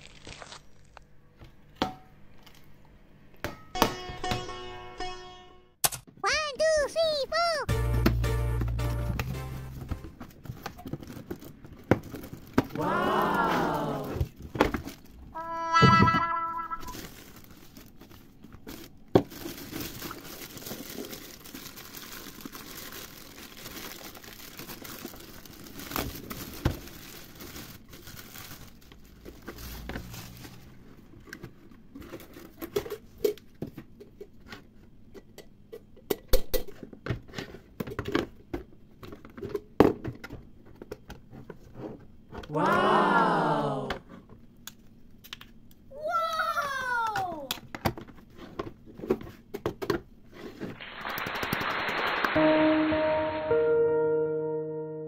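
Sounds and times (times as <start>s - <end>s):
packaging crinkling and rustling: 0.0s - 1.2s, 10.2s - 12.7s, 16.8s - 33.4s.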